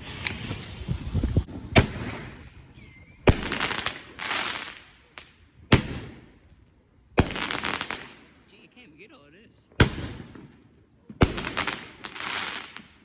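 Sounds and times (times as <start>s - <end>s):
firework bangs: 0.0s - 4.9s, 5.7s - 6.4s, 7.2s - 8.3s, 9.8s - 13.0s
crackling hiss: 0.0s - 5.4s.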